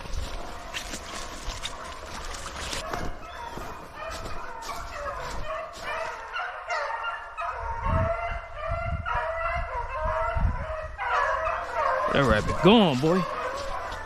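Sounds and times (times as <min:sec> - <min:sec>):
hounds baying: 0:00.0 - 0:14.0.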